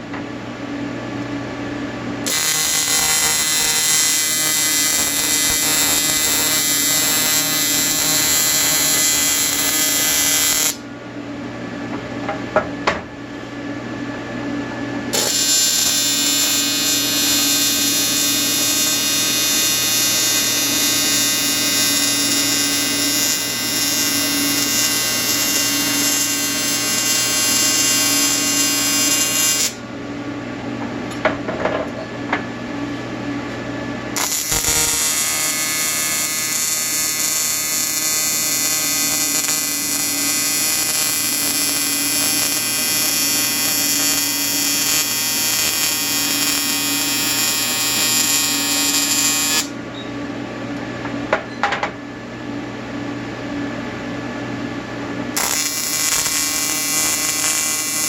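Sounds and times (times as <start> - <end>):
welding arc buzzing: 2.2 - 10.8, 15.1 - 29.8, 34.1 - 49.8, 55.3 - 58.0.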